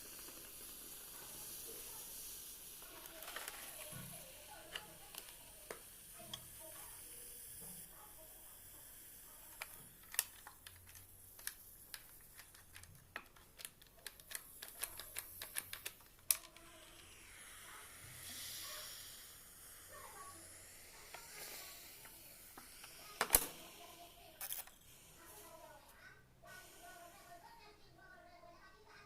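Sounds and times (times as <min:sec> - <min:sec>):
small irregular clicks: 0:00.0 - 0:07.9, 0:08.7 - 0:17.2
soft hiss: 0:00.0 - 0:29.0.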